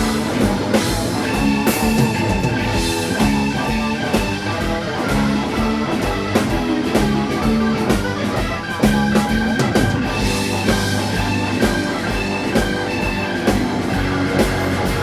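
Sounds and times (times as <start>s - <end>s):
bass guitar: 0.0s - 15.0s
drum kit beat: 0.0s - 15.0s
electric guitar: 0.0s - 15.0s.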